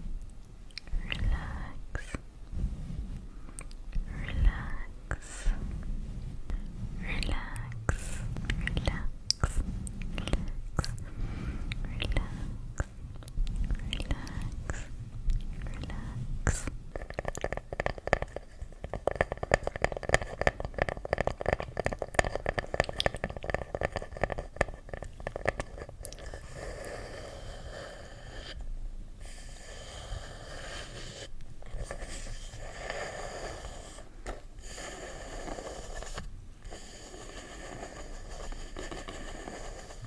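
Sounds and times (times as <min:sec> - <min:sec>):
close crackling: 0:07.2 - 0:27.0
scratchy rustle: 0:29.5 - 0:40.0.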